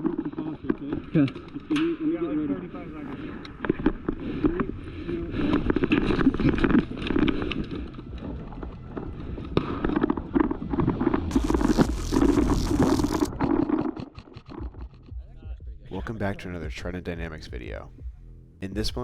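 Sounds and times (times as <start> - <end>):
rush of noise: 11.3 - 13.5.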